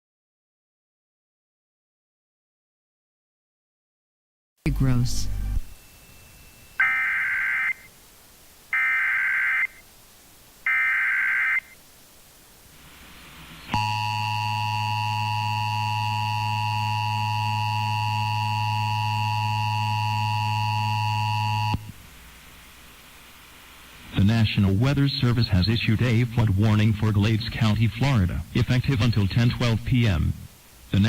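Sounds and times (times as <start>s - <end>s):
digital data tone bursts: 4.7s - 7.9s
two-tone attention signal: 4.8s - 7.9s.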